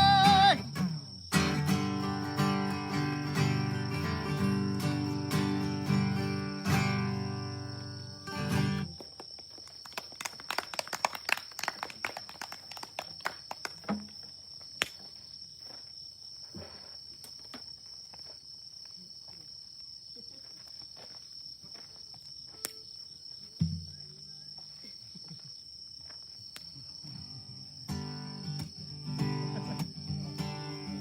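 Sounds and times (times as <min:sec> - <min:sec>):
steady high tone: 0:00.0 - 0:00.6.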